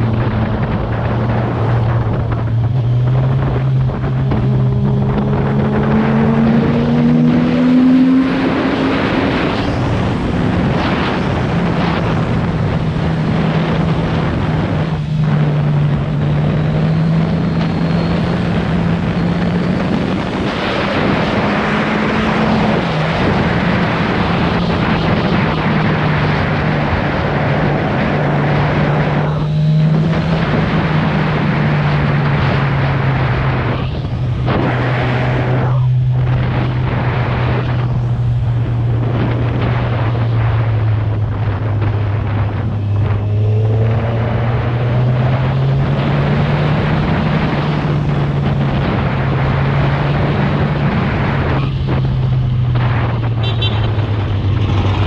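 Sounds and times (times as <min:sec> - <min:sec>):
motorcycle engine running: 0:00.0 - 0:07.7
wind and road noise: 0:00.0 - 0:55.0.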